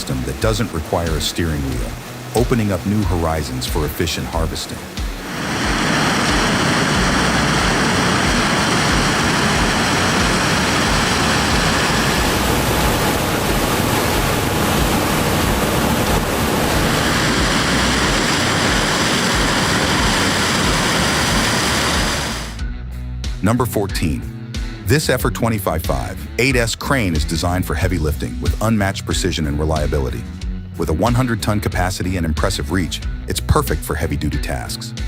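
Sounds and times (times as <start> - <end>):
combine harvester running: 0.0 - 22.6
faint high whines: 1.8 - 22.6.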